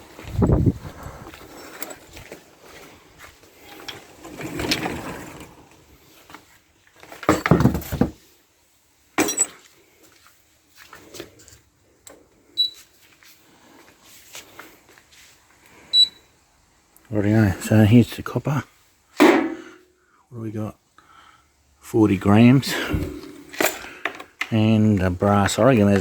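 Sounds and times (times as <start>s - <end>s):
objects being moved and set down: 0.2s - 8.4s, 9.2s - 11.7s, 19.2s - 19.8s, 22.7s - 24.6s, 25.3s - 26.0s.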